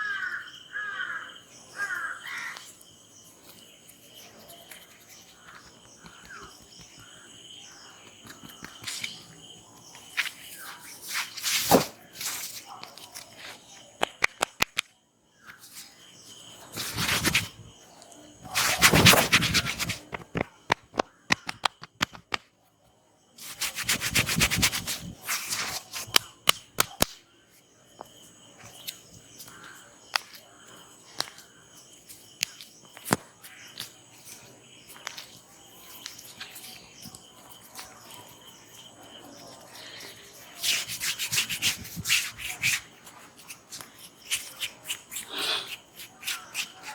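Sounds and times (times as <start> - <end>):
crickets chirping: 0.0 - 46.9
hands rubbing a head: 10.2 - 14.8, 16.7 - 17.7, 18.4 - 22.4, 23.4 - 27.1, 40.6 - 43.6
quick sharp taps: 14.0 - 14.9, 18.6 - 22.5, 26.0 - 27.2.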